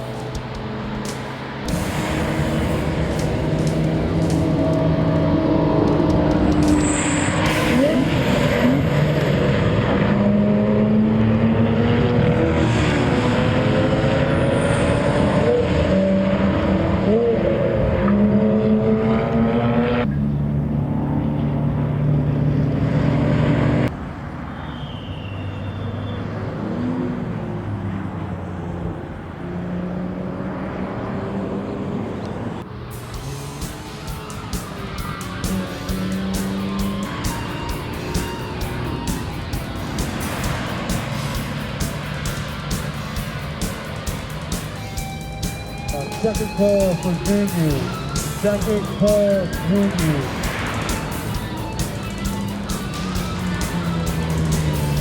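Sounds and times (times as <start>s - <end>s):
music with steady drum beat: 0.0s - 8.6s, 32.8s - 55.0s
gear changes: 0.0s - 24.0s, 30.5s - 55.0s
race car engine at speed: 0.0s - 55.0s.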